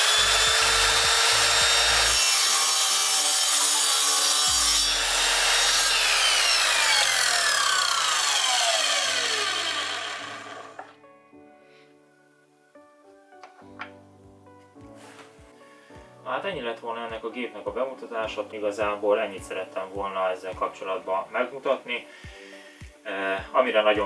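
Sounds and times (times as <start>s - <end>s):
miter saw cutting wood: 0.0s - 10.9s
saw blade spinning down: 0.0s - 10.9s.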